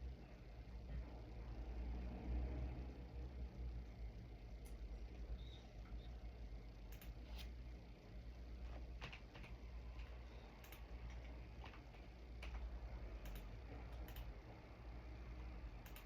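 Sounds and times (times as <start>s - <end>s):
computer keys clicking: 6.9s - 7.2s, 8.7s - 14.3s, 15.7s - 16.0s.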